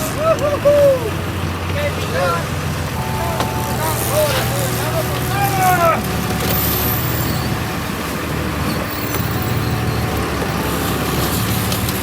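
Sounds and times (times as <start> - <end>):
boat engine humming: 0.0 - 12.0
broad rushing noise: 2.8 - 12.0.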